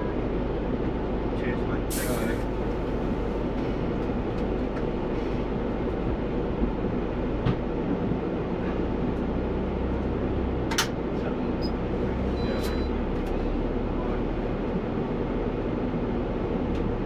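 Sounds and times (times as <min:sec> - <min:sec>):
bus engine rumbling: 0:00.0 - 0:17.0.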